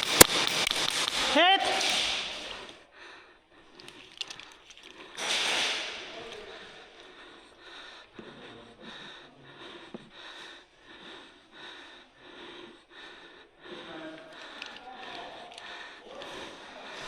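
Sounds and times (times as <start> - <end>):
sharp clicks: 0.0 - 2.8
heavy rapid breathing: 0.0 - 17.0.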